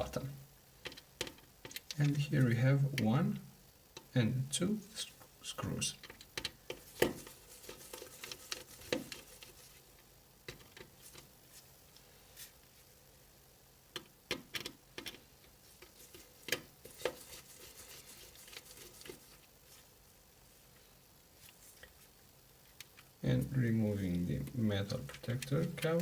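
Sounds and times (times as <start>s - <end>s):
repair tools clicking and tapping: 6.0s - 7.3s, 14.0s - 15.2s.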